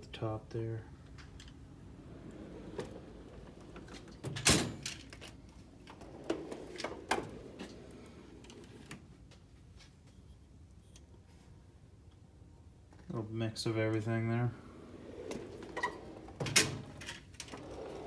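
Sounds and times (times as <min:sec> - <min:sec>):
metal drawers sliding and knocking: 0:01.3 - 0:09.0, 0:15.1 - 0:18.0.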